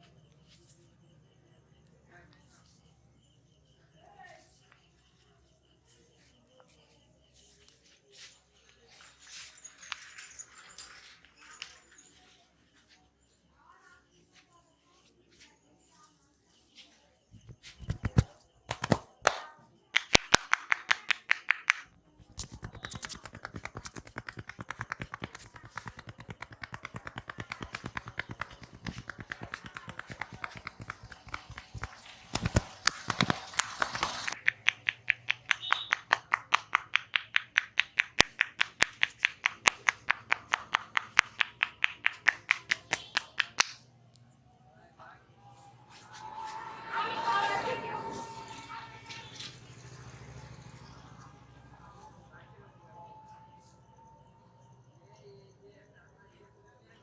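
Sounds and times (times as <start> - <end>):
hand taps and slaps massage: 17.4 - 43.8.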